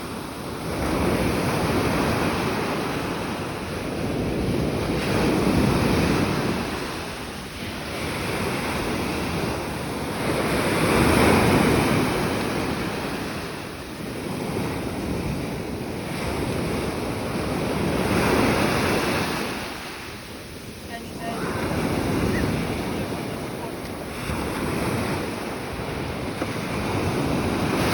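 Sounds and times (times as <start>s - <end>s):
waves breaking: 0.0s - 27.9s.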